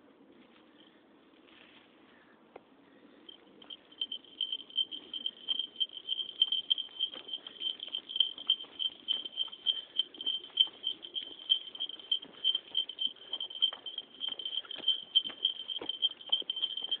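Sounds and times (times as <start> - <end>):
dog tag jingling: 3.6 - 17.0
dog footfalls pattering: 4.4 - 17.0.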